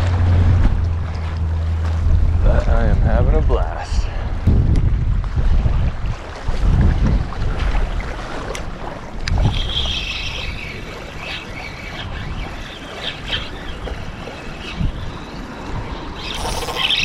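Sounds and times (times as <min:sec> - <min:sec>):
wind buffeting microphone: 0:00.0 - 0:17.0
faint high whirring: 0:16.2 - 0:17.0.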